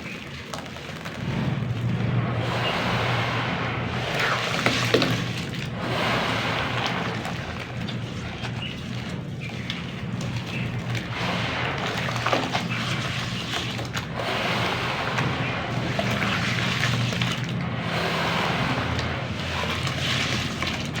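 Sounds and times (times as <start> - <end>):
small cracks: 0.0 - 2.2
low hum: 0.9 - 21.0.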